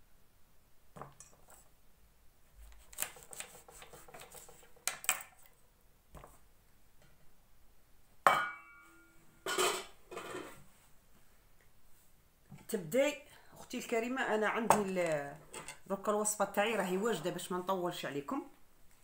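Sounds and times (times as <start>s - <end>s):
sharp ringing clink on dish: 8.3s - 9.7s.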